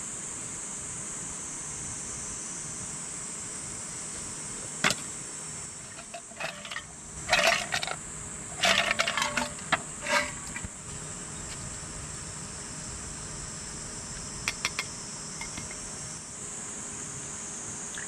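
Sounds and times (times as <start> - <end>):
insects droning: 0.0 - 18.0
clattering knocks: 8.6 - 10.6.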